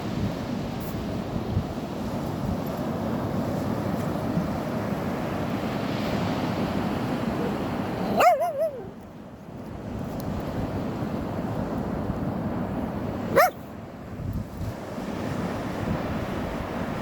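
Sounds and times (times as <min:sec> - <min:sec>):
sea waves: 0:00.0 - 0:09.6, 0:10.4 - 0:17.0
wind: 0:00.0 - 0:17.0
dog whining: 0:07.4 - 0:09.0, 0:13.3 - 0:13.6.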